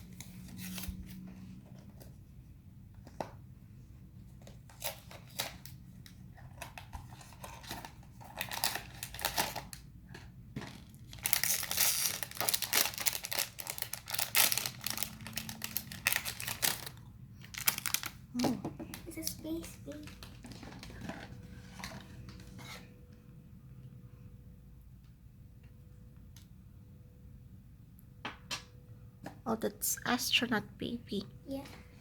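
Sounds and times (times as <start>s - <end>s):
toy packaging clicks and rustles: 4.4s - 22.4s
wrapping crinkling and tearing: 4.7s - 9.9s, 10.7s - 18.4s.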